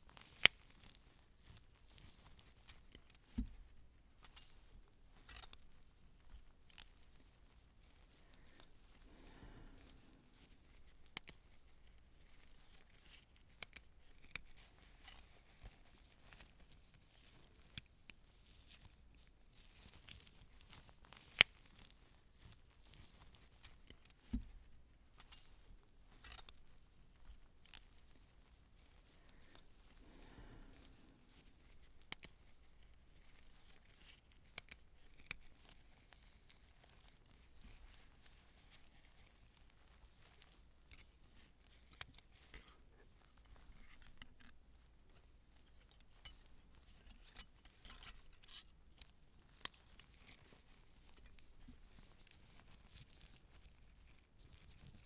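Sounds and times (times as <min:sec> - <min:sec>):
faint rustling: 0:00.0 - 0:55.0
light metallic clicks and taps: 0:02.7 - 0:04.5.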